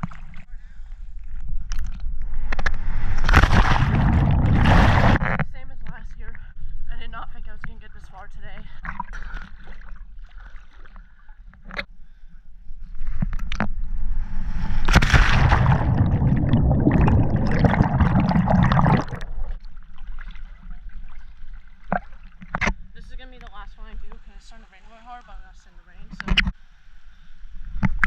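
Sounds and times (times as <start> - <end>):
water splashing and churning: 0.0 - 5.4, 8.7 - 11.8, 12.9 - 22.9.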